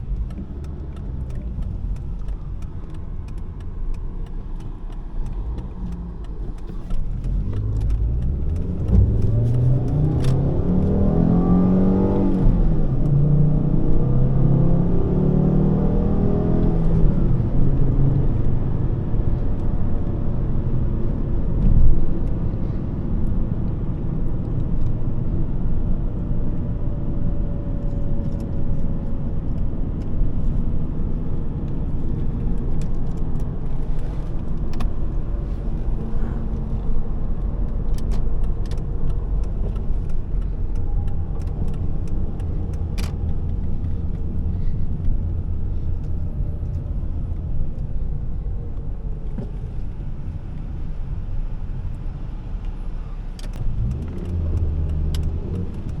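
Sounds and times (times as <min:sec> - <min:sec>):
car engine rumble: 0:00.0 - 0:56.0
road noise: 0:00.0 - 0:56.0.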